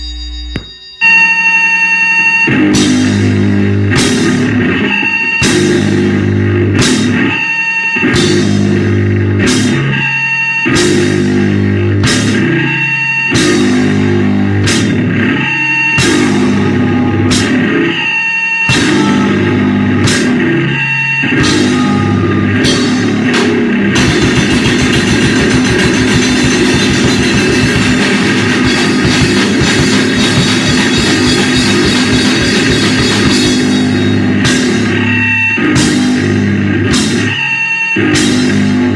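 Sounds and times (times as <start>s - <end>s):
distorted guitar: 0.0s - 38.9s
rapid drumming: 2.6s - 7.4s, 8.0s - 10.1s, 10.7s - 38.9s.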